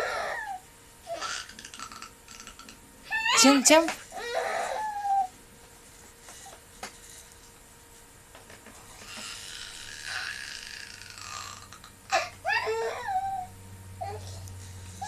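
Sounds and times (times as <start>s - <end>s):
baby making raspy croaking sound: 1.1s - 3.3s, 9.0s - 13.0s.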